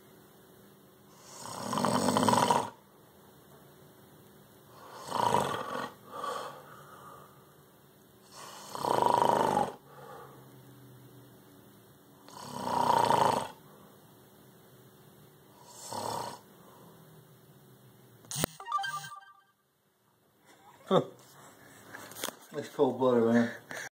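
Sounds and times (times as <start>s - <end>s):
man snoring: 1.2s - 2.8s, 4.8s - 6.6s, 8.3s - 9.8s, 12.3s - 13.6s, 15.6s - 16.5s.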